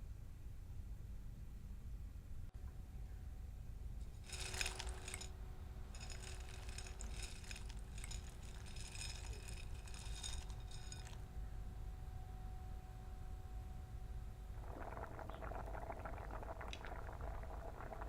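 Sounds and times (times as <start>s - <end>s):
faint low hum: 0.0s - 18.0s
metallic clinking and rattling: 4.2s - 11.2s.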